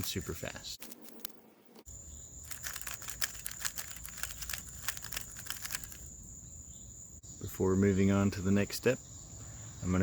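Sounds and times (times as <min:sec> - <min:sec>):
plastic cube clicking and rattling: 0:02.4 - 0:06.1.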